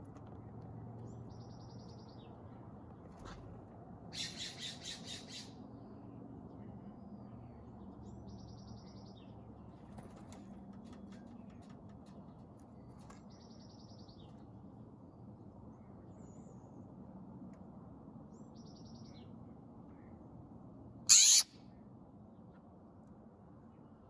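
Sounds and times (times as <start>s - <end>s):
bird harsh call: 21.1s - 21.5s
bird high trills: 21.1s - 21.5s.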